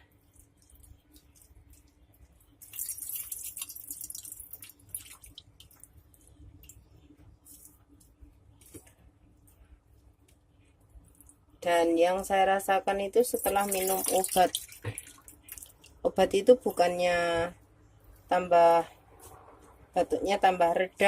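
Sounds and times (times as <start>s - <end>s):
juice trickling and dripping: 0.0s - 9.6s, 10.9s - 11.6s, 13.2s - 16.2s
small wet clicks: 0.2s - 9.6s, 13.5s - 16.0s.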